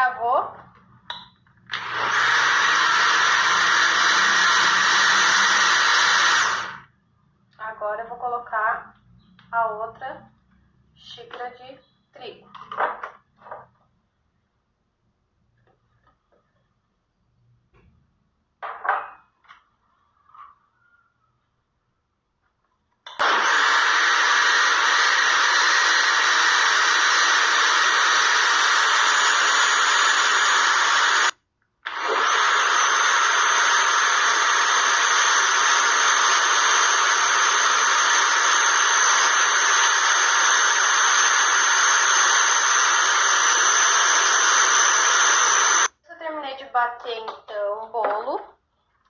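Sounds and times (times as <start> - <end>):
blender motor running: 1.7 - 6.9, 23.1 - 45.9.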